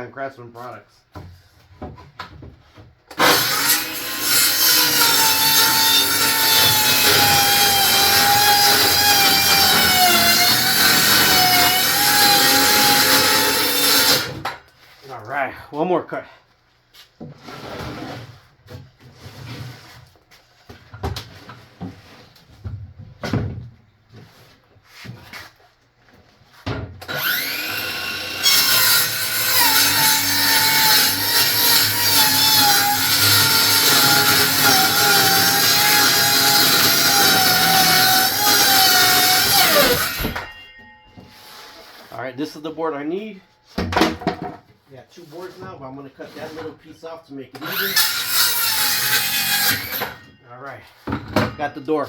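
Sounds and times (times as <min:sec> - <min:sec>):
circular saw cutting wood: 0:03.2 - 0:14.4, 0:27.1 - 0:40.6, 0:47.6 - 0:50.2.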